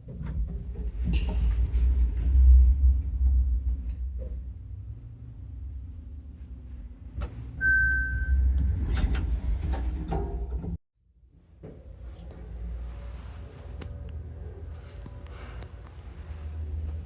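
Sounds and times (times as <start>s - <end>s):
elevator rumbling: 0.0s - 10.8s
short beep: 7.6s - 8.5s.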